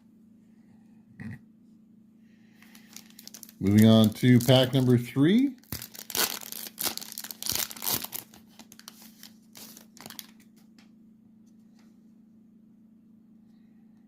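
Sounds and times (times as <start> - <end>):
steady low hum: 0.0 - 14.0
foil wrapper tearing and crinkling: 2.7 - 5.0, 5.6 - 10.5.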